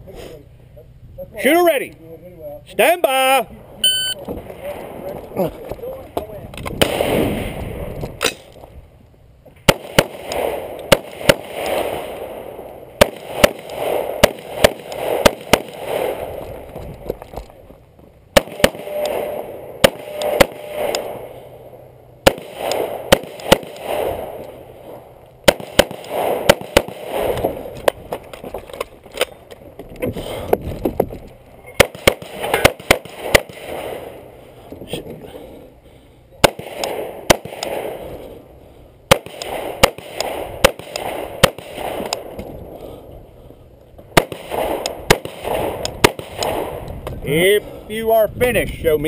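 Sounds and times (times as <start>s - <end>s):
rifle shots: 6.8s - 8.5s, 9.6s - 16.8s, 18.3s - 28.2s, 31.7s - 34.3s, 36.4s - 38.4s, 39.1s - 42.4s, 44.1s - 46.9s.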